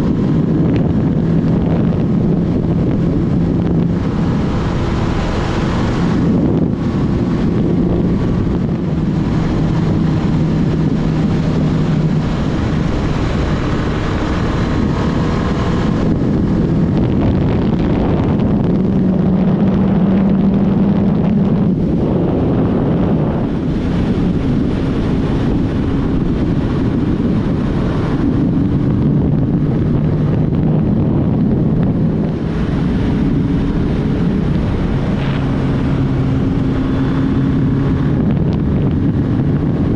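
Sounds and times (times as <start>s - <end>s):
motorcycle engine hum: 0.0s - 39.9s
wind rushing on microphone: 0.0s - 39.9s.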